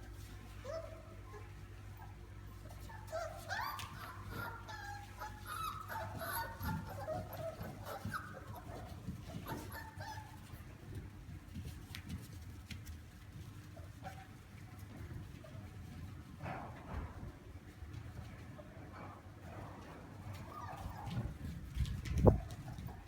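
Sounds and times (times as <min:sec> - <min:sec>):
puppies whimpering: 0:02.8 - 0:10.5.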